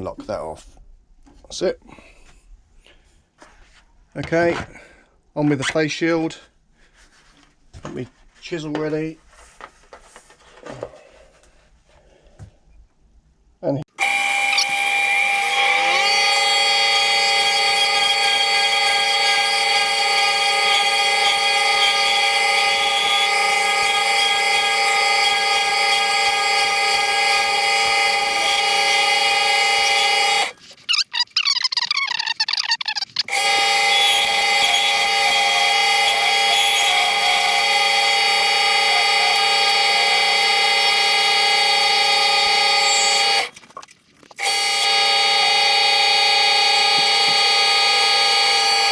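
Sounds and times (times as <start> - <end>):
lathe motor whine: 14.0 - 30.8, 33.3 - 43.5, 44.4 - 48.9
chisel turning acrylic: 14.0 - 43.7.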